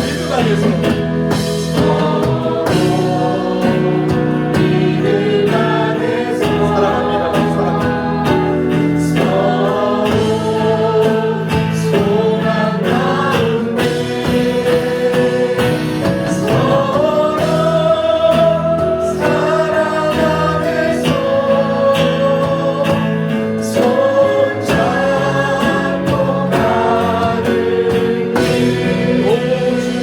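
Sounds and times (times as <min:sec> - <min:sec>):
choir singing a hymn: 0:00.0 - 0:30.0
instrumental accompaniment: 0:00.0 - 0:30.0.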